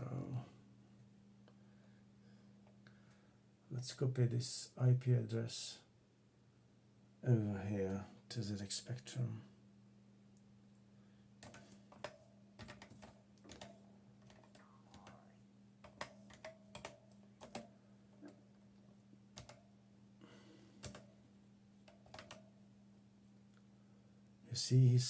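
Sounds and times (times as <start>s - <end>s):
faint steady hum: 0.0s - 25.0s
faint keyboard clicks: 11.4s - 19.7s, 20.7s - 21.2s, 21.8s - 22.5s.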